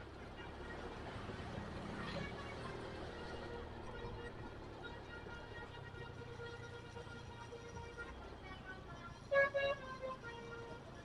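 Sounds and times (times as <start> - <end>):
multi-tone bus air horn: 5.1 - 7.3, 9.2 - 11.0.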